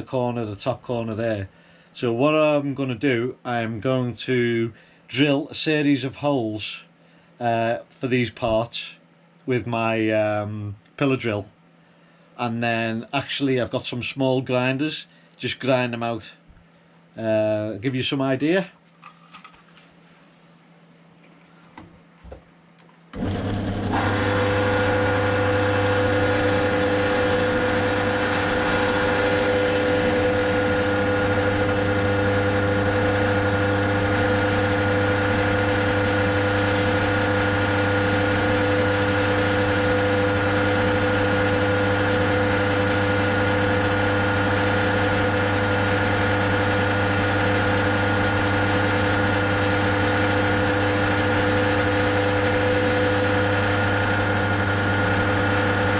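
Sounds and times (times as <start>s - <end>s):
drill motor humming: 23.1s - 55.9s.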